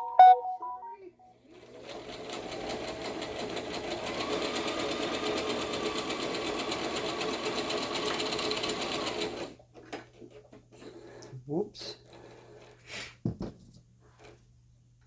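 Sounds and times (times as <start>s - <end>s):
sewing machine stitching: 1.5s - 9.6s.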